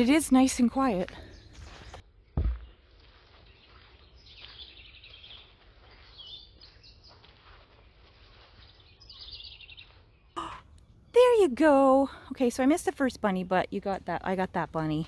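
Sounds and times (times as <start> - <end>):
birds chirping and trilling: 0.0 - 2.8, 3.4 - 7.3, 8.6 - 11.2.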